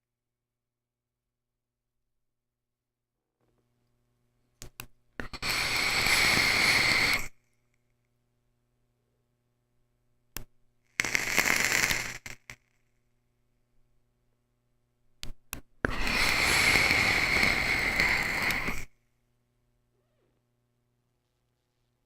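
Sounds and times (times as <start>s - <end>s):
vaporizer coil crackling and hissing: 5.2s - 7.4s, 10.4s - 12.8s, 15.2s - 19.0s.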